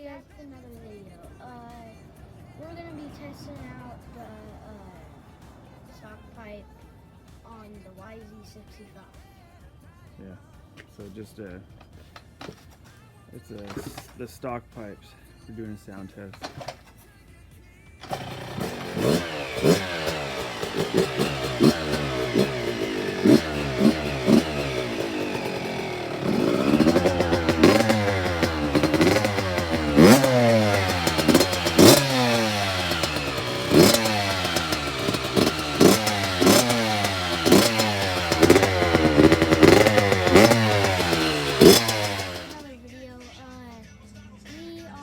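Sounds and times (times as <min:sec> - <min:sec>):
two-stroke engine idling and revving: 0:00.0 - 0:07.9, 0:13.5 - 0:14.2, 0:16.3 - 0:16.8, 0:18.0 - 0:43.0.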